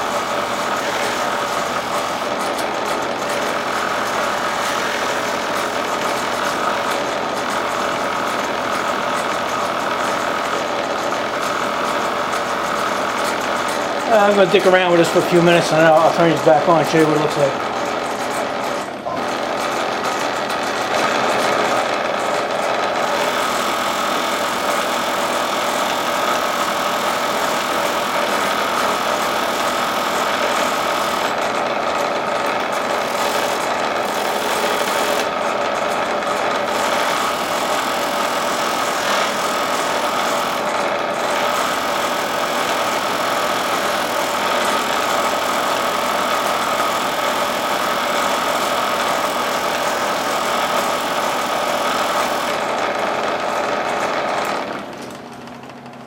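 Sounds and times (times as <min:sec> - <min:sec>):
buffing wheel running and rattling: 0:00.0 - 0:56.0.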